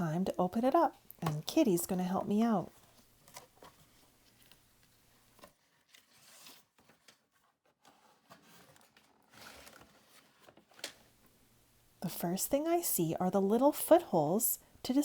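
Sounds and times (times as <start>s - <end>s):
packaging rustling and tearing: 5.3s - 11.1s.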